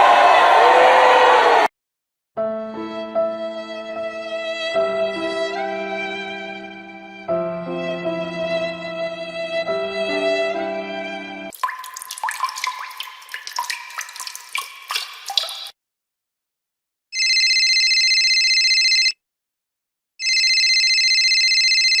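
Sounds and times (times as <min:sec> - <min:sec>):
water dripping and plopping: 0:11.5 - 0:15.8
telephone ringing: 0:17.2 - 0:19.2, 0:20.2 - 0:22.0.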